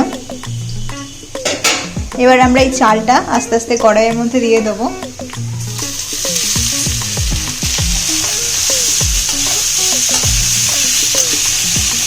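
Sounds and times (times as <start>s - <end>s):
rice sizzling in hot oil: 5.2s - 12.0s.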